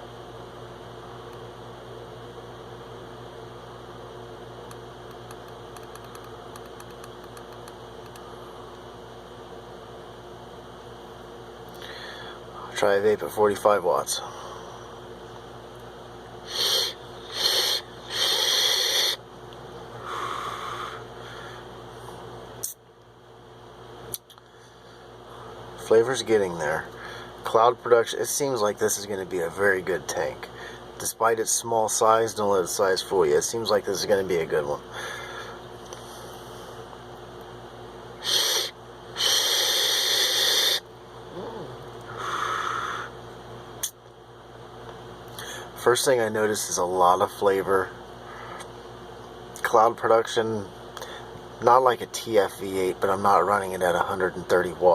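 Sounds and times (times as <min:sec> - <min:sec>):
sharp click: 0:04.7 - 0:08.2, 0:43.8 - 0:44.0
hissing vape draws: 0:16.5 - 0:19.2, 0:38.2 - 0:40.8.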